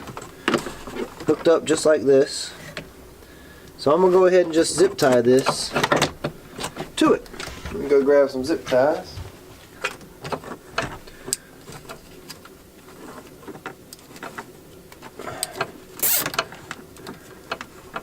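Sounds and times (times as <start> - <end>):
short rasp: 16.0 - 16.3
zip ties and wiring rustling: 16.0 - 16.7.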